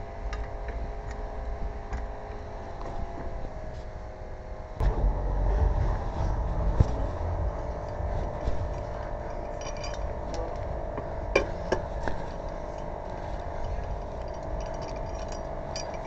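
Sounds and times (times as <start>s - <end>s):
steady hum: 0.0s - 16.0s
metallic clinking of tools: 8.7s - 10.7s, 12.6s - 16.0s.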